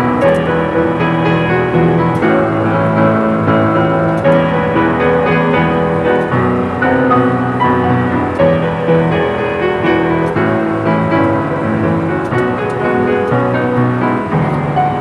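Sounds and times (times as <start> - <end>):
piano playing pop melody: 0.0 - 15.0.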